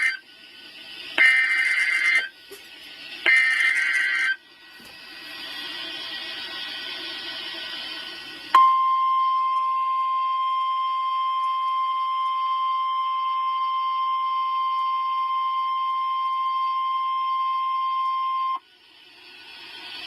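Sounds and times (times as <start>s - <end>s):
steady high alarm beep: 1.2s - 2.3s, 3.3s - 4.4s, 8.6s - 18.6s.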